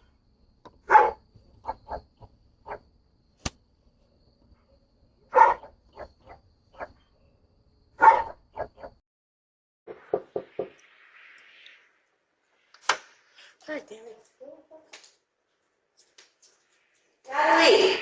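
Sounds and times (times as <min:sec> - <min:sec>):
dog barking: 0:00.8 - 0:02.8, 0:05.3 - 0:07.0, 0:08.0 - 0:08.9.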